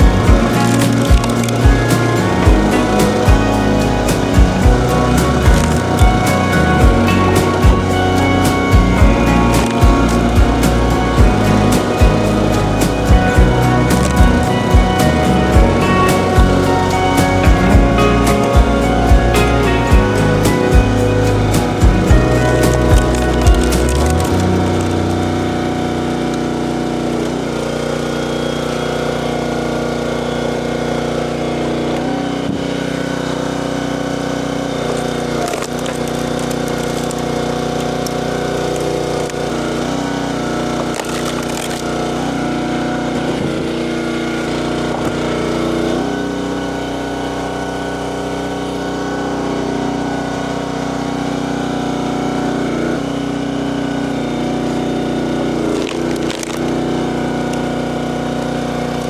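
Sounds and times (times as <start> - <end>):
motor drone: 0.0 - 59.0
wood cracking and splintering: 34.2 - 43.9, 55.6 - 57.7.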